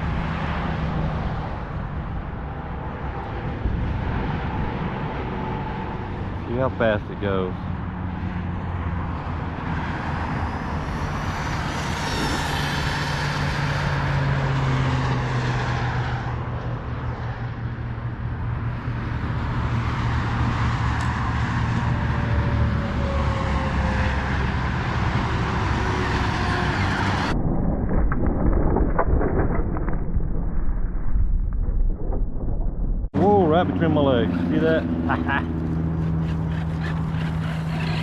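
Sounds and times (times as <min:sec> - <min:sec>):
tire noise: 0:00.0 - 0:38.0
rc car motor whine: 0:10.6 - 0:13.4.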